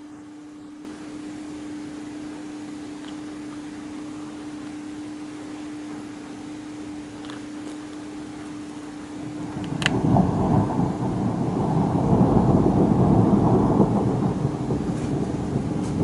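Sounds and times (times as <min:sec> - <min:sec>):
thunder rumbling: 0:08.7 - 0:16.0.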